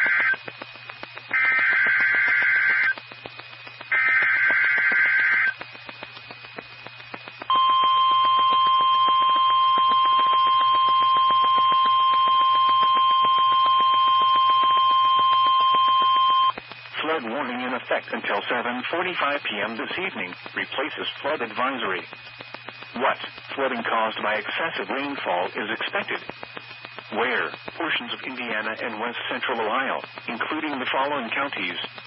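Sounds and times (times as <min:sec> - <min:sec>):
steady warning alarm tone: 0:00.0 - 0:03.0, 0:03.6 - 0:05.8, 0:07.2 - 0:16.6
harsh digital data bursts: 0:00.0 - 0:32.0.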